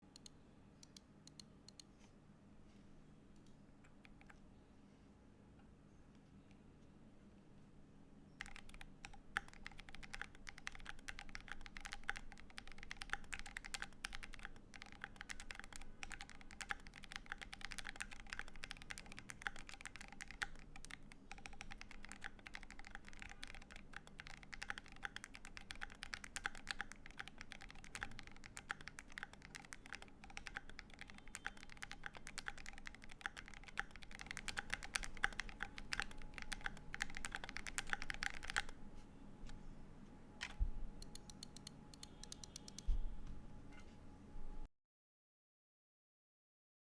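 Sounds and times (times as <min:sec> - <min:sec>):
fast typing on mechanical keyboard: 0:08.4 - 0:38.8, 0:41.0 - 0:42.8.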